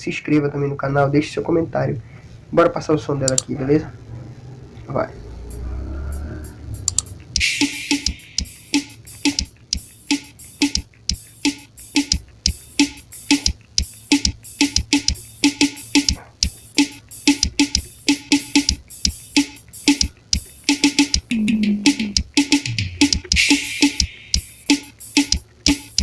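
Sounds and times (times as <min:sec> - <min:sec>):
cymbal crash: 0:05.5 - 0:12.2
drum groove: 0:05.5 - 0:26.0.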